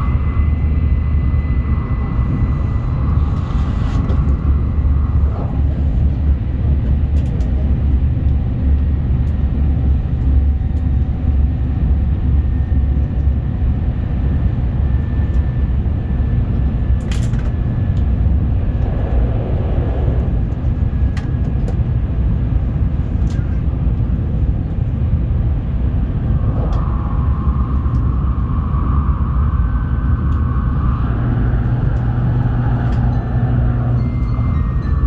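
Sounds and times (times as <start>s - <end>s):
train running at speed: 0.0s - 35.0s.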